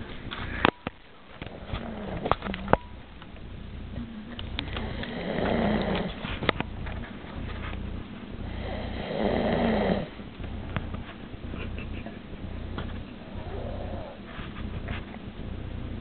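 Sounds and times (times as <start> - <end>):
person snoring: 4.0 - 6.2, 8.4 - 10.2.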